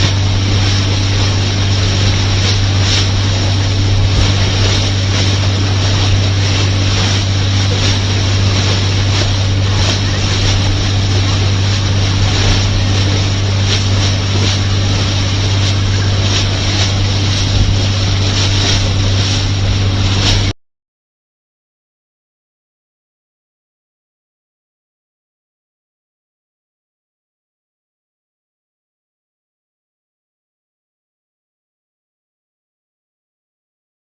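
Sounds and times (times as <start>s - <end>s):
wind buffeting microphone: 0.0s - 20.5s
boat engine running: 0.0s - 20.6s
water rushing past hull: 0.0s - 20.6s.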